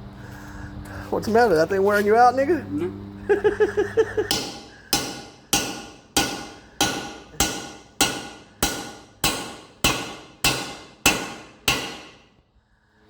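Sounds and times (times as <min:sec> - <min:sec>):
hammer blows on metal: 0:04.3 - 0:12.4.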